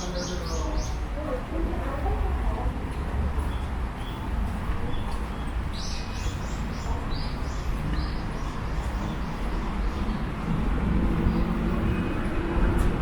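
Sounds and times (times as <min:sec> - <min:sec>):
bird chirping: 0:00.0 - 0:01.0, 0:04.9 - 0:10.4.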